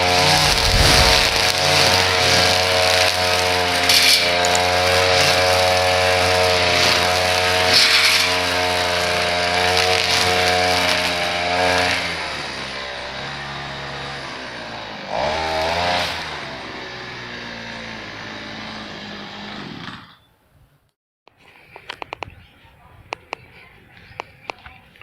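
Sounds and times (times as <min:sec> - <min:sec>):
small engine running: 0:00.0 - 0:20.3.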